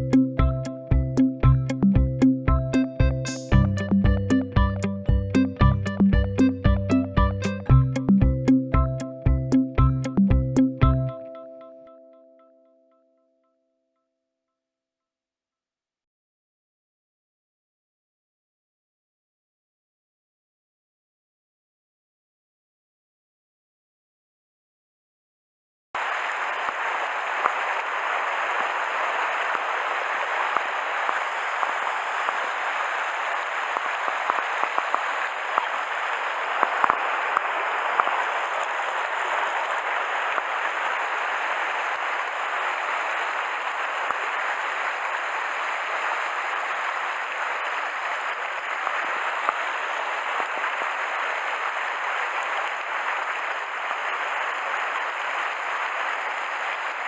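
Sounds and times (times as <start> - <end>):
stream water rushing: 26.0 - 56.9.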